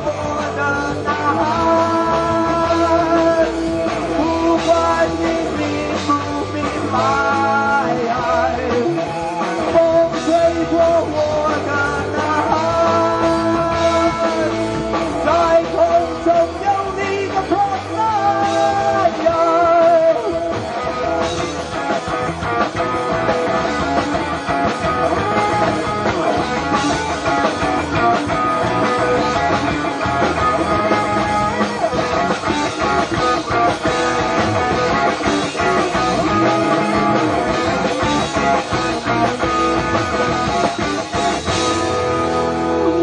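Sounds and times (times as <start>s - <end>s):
live rock band instrumental: 0.0s - 43.0s.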